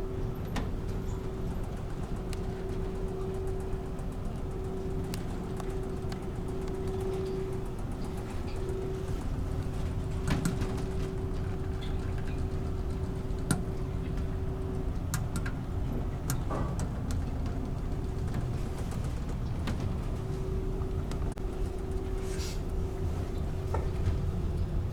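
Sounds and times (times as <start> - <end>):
steady hum: 0.0 - 24.9.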